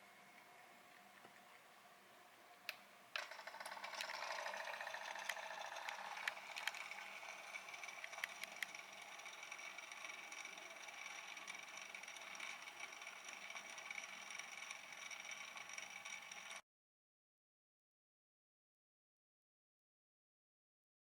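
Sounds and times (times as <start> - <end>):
coffee machine pump buzzing: 0.0 - 16.6.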